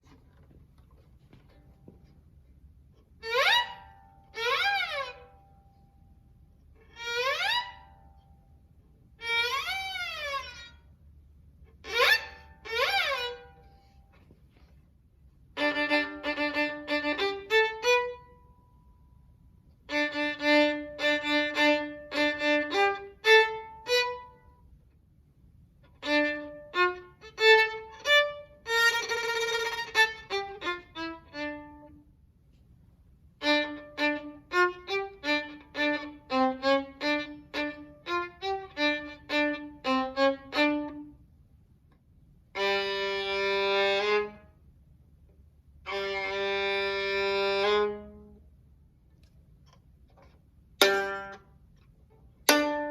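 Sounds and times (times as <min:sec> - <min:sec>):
violin bowed notes: 0:03.2 - 0:06.1, 0:06.8 - 0:11.0, 0:11.8 - 0:14.4, 0:15.5 - 0:19.2, 0:19.8 - 0:24.6, 0:25.9 - 0:32.1, 0:33.4 - 0:41.2, 0:42.5 - 0:44.5, 0:45.8 - 0:48.4, 0:50.8 - 0:51.6, 0:52.4 - 0:52.9.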